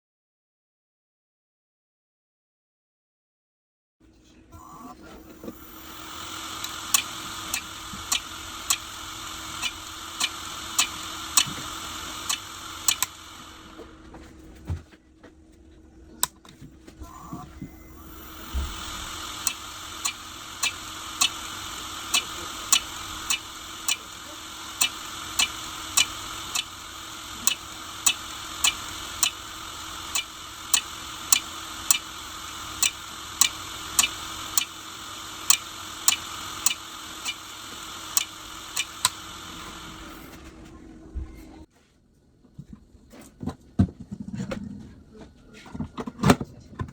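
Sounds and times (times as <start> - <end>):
hard drive running hiss: 4.6 - 14.4, 16.9 - 41.7
hard drive head clicking: 5.3 - 13.9, 17.2 - 40.3.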